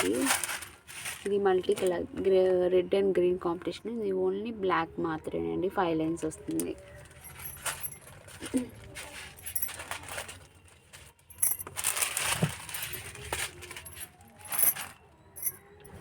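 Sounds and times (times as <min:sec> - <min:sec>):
packaging rustling: 0:00.0 - 0:02.3, 0:06.5 - 0:15.6
jewellery clinking: 0:06.5 - 0:16.0.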